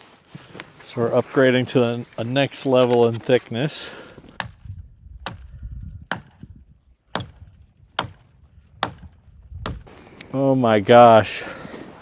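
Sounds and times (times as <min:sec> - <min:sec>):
wood chopping strikes: 0:04.4 - 0:04.6, 0:05.2 - 0:05.5, 0:06.1 - 0:06.5, 0:07.1 - 0:09.9.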